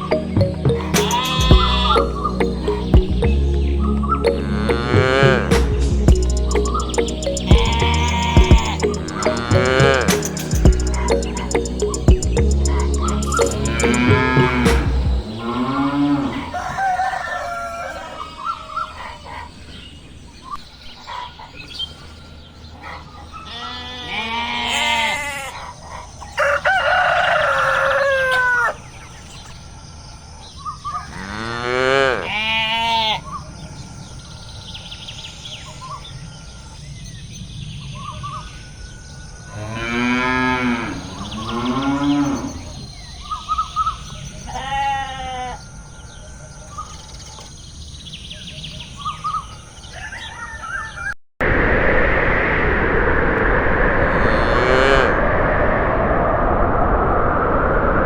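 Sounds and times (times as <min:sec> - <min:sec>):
chickens calling: 0:00.0 - 0:19.8, 0:24.6 - 0:29.6
cattle mooing: 0:00.8 - 0:02.8, 0:13.7 - 0:14.7, 0:39.6 - 0:42.7.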